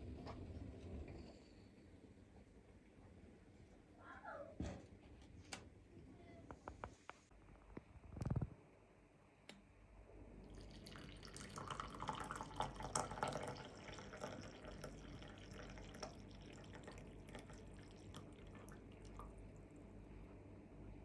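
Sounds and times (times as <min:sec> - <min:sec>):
liquid pouring and dripping: 0:10.5 - 0:20.1.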